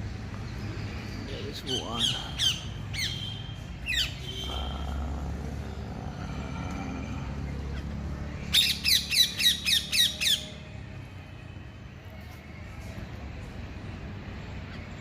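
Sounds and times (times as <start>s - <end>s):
parakeets screeching: 1.5s - 10.6s.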